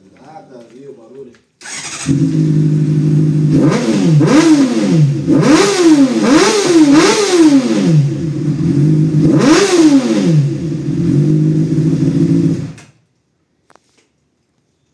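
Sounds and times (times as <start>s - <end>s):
motorcycle engine idling and revving: 1.6s - 12.9s.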